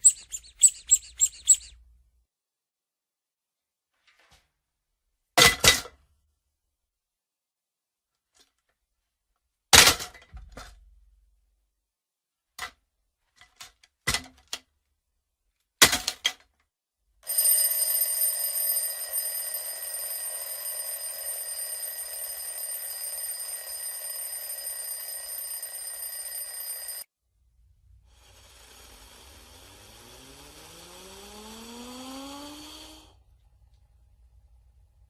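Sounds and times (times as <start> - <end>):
bell ringing: 17.3 - 27.0.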